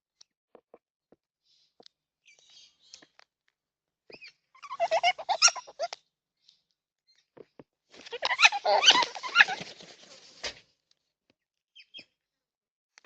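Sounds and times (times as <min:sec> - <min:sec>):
bird chirps and clicks: 0:01.8 - 0:03.3, 0:04.1 - 0:04.4, 0:11.8 - 0:12.2
birds chattering harshly: 0:08.1 - 0:09.7.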